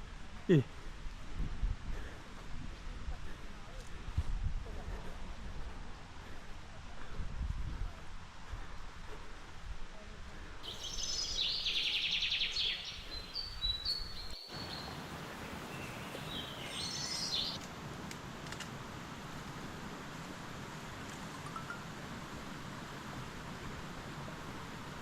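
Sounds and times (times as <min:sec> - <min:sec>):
steady background hiss: 0:10.6 - 0:25.0
songbird trilling and whistling: 0:10.7 - 0:14.9, 0:16.2 - 0:17.6.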